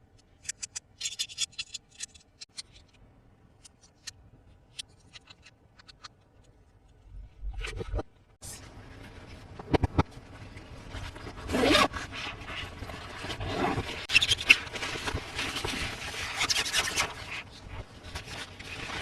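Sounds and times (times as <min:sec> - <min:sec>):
packaging scraping and rubbing: 0:10.4 - 0:19.0.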